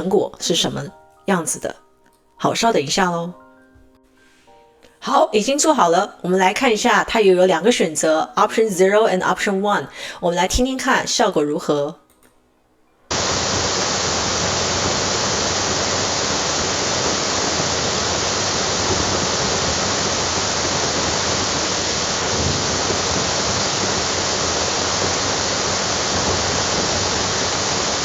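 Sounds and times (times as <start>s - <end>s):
steady rushing noise: 13.1s - 28.0s.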